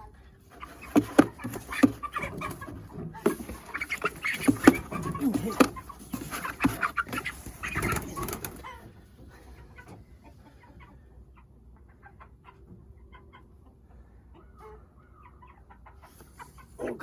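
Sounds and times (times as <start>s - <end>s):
chicks peeping: 0.4s - 16.9s
loud scuffling: 0.6s - 8.6s.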